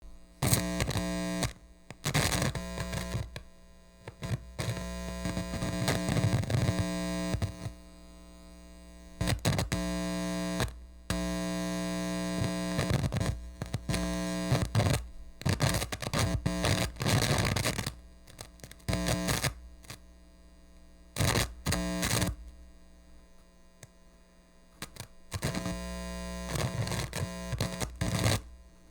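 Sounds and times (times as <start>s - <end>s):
electrical hum: 0.0s - 28.9s
radio static crackling: 4.1s - 7.7s, 24.9s - 28.5s.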